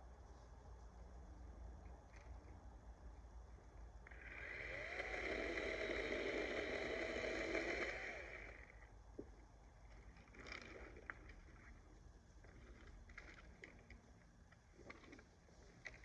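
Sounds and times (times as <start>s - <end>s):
chainsaw whine: 4.1s - 8.9s.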